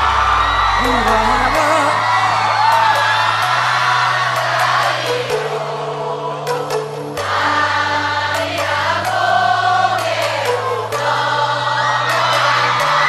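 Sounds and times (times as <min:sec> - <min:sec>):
long held bass notes: 0:00.0 - 0:02.7
choir of sustained voices: 0:00.0 - 0:13.0.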